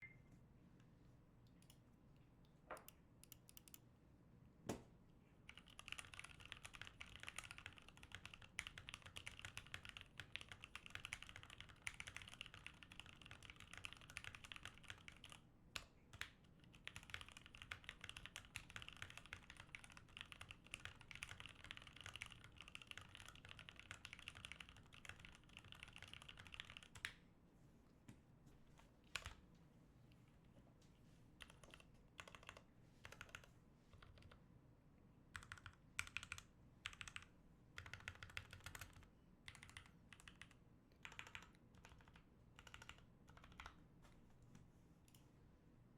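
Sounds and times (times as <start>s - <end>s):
mechanical keyboard typing: 2.8s - 3.8s, 5.5s - 27.1s, 31.4s - 34.4s, 35.3s - 43.8s.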